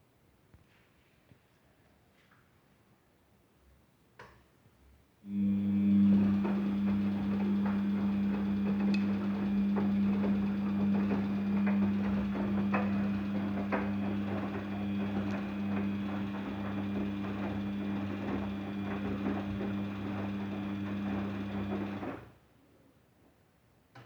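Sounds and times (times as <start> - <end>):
washing machine humming: 5.3 - 22.4.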